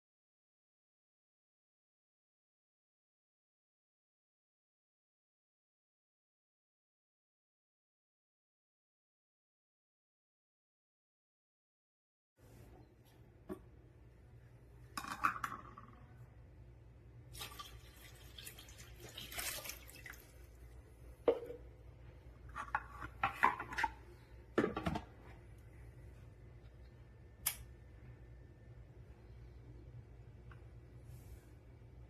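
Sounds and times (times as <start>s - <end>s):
low steady hum: 12.4s - 32.0s.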